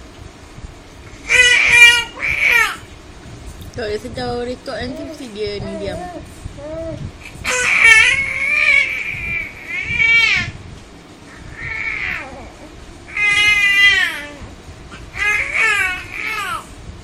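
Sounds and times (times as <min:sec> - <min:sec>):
baby crying: 0:01.3 - 0:02.8, 0:06.6 - 0:10.6, 0:11.5 - 0:14.5, 0:15.1 - 0:16.7.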